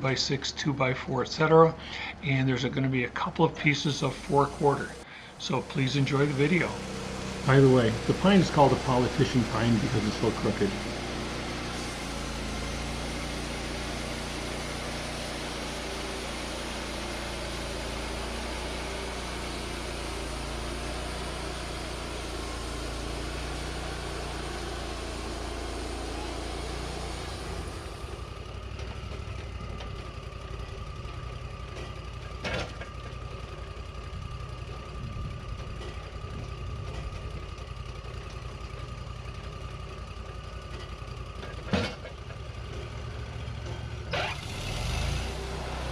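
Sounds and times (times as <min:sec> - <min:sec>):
steady whine: 0:00.0 - 0:17.0
sawmill engine running: 0:00.0 - 0:45.9.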